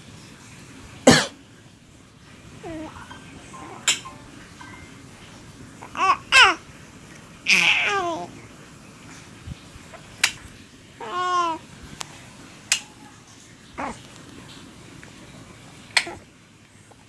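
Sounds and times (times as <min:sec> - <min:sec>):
adult coughing: 0:01.1 - 0:01.4
baby babbling: 0:02.6 - 0:04.0, 0:05.8 - 0:06.7, 0:07.5 - 0:08.4, 0:11.0 - 0:11.7, 0:13.8 - 0:14.1, 0:16.0 - 0:16.2
baby laughing squeals: 0:05.9 - 0:06.6, 0:07.5 - 0:08.3, 0:11.0 - 0:11.6.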